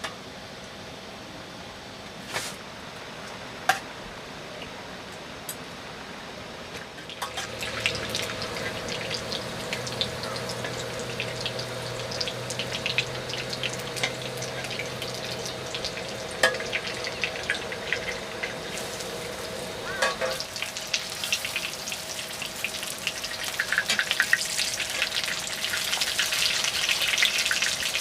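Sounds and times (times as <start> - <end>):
food sizzling in a pan: 7.1 - 28.0
steady low hum: 7.2 - 23.2.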